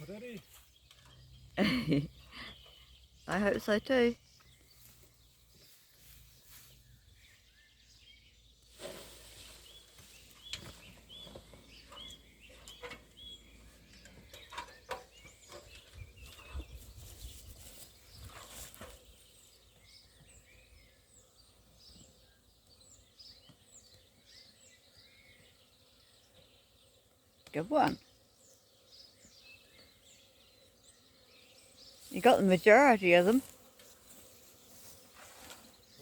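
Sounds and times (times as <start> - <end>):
small birds chirping: 0.0 - 36.0
rustling: 8.7 - 12.0, 15.5 - 19.2, 32.0 - 36.0.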